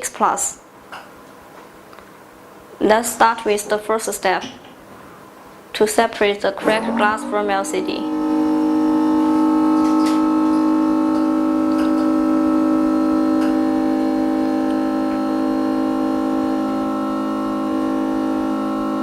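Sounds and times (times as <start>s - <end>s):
sustained synth chord: 6.6s - 19.0s.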